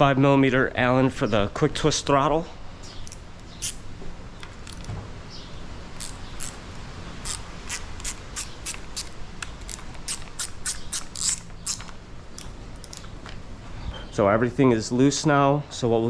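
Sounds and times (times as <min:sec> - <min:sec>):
metallic tool clicks: 0:07.2 - 0:13.1.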